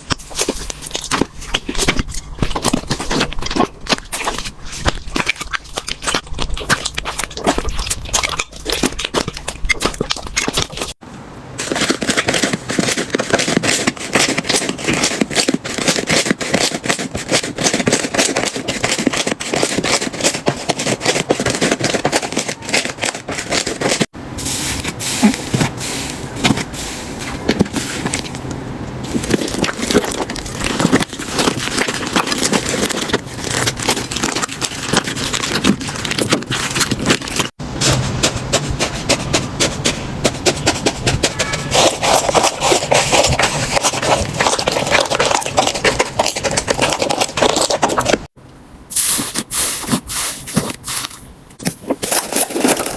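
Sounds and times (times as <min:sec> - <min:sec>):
slime crackling and popping: 0:26.4 - 0:48.4.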